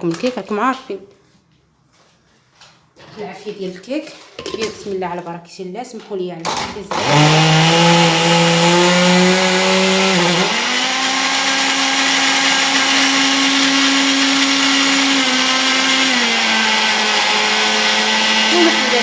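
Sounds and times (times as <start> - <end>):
electric mixer running: 6.9 - 19.0.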